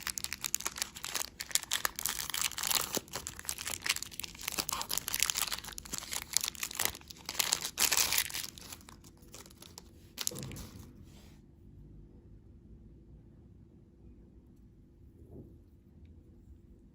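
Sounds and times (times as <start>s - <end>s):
plastic packaging crinkling and tearing: 0.0s - 10.8s.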